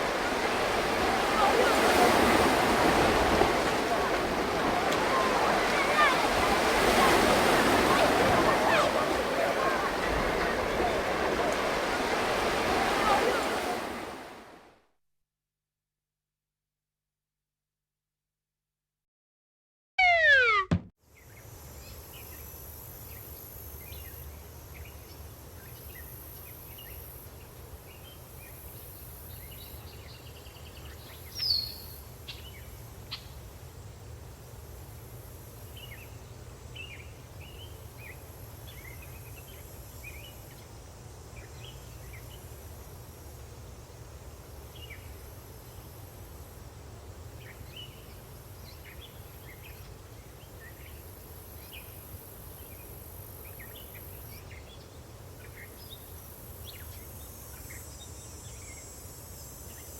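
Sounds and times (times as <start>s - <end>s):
loud falling bird chirp: 20.0s - 20.9s.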